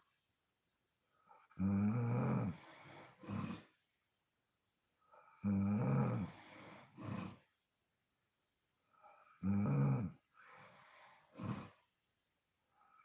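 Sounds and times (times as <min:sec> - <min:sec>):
woman snoring: 0:01.5 - 0:03.7, 0:05.2 - 0:07.4, 0:09.0 - 0:11.8
breathy puff: 0:02.6 - 0:03.8, 0:06.4 - 0:07.4, 0:10.4 - 0:11.8.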